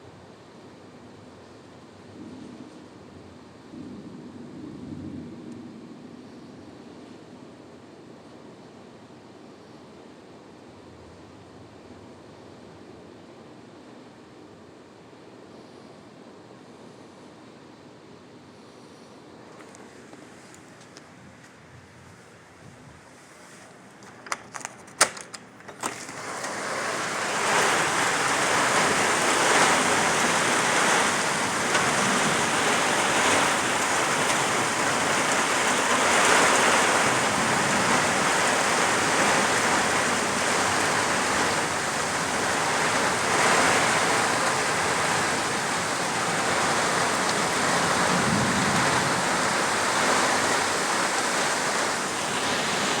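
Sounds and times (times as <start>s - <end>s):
heavy rain pouring: 25.8s - 53.0s.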